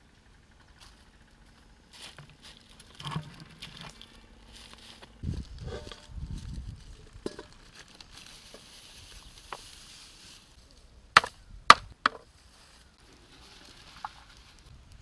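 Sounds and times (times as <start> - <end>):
chopping strikes: 11.2 - 12.2.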